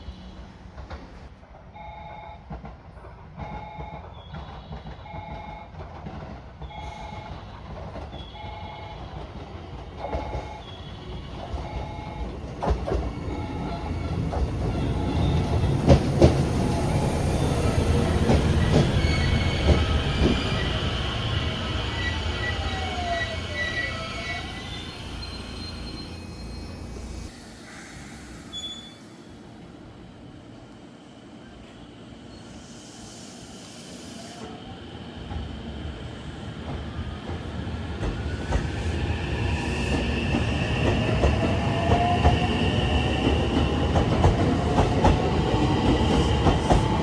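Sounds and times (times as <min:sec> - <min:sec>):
train rumbling: 0:00.0 - 0:47.0
wheel squeal: 0:18.4 - 0:29.1.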